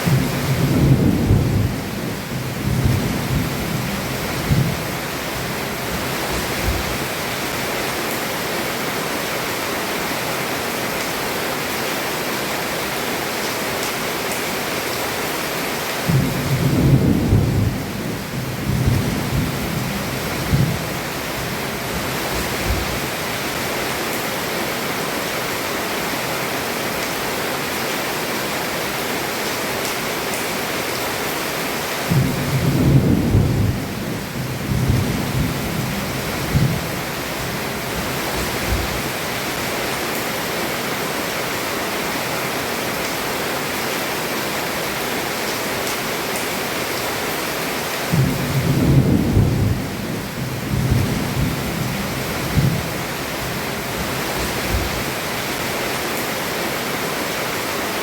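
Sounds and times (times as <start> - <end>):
heavy rain on a roof: 0.0 - 58.0
thunder rolling: 0.1 - 4.8, 16.1 - 20.8, 32.1 - 37.0, 48.1 - 52.9.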